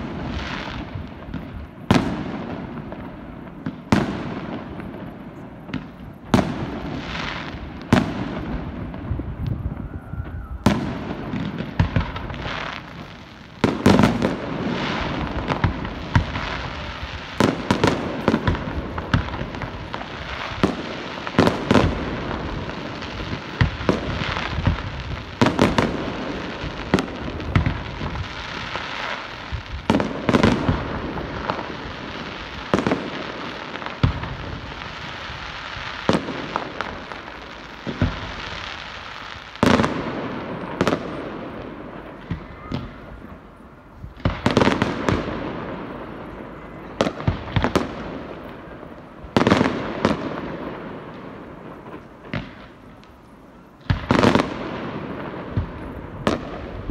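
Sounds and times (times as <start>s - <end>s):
fireworks bursting with loud bangs: 0.0s - 56.9s.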